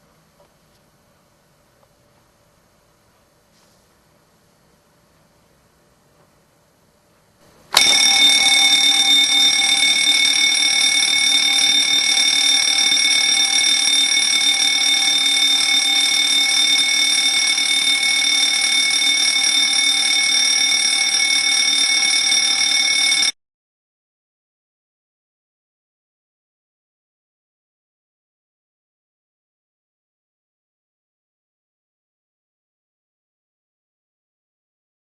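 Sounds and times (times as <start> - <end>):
fire alarm bell ringing: 7.7 - 23.4.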